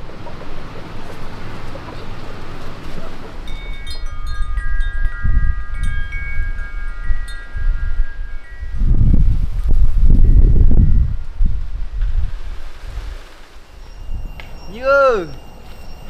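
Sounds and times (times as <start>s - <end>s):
wind gusting on microphone: 0.0s - 16.0s
chimes ringing: 3.3s - 11.3s, 13.6s - 16.0s.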